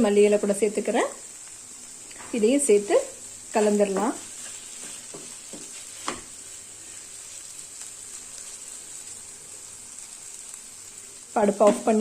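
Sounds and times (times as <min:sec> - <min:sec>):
food sizzling in oil: 0:00.0 - 0:12.0
spatula scraping pan: 0:03.8 - 0:07.1
spatula knocking on pan: 0:04.8 - 0:06.3.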